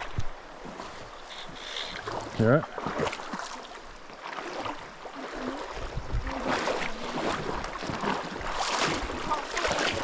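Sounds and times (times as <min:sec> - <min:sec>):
river water rushing: 0:00.0 - 0:10.0
wind buffeting microphone: 0:05.7 - 0:10.0.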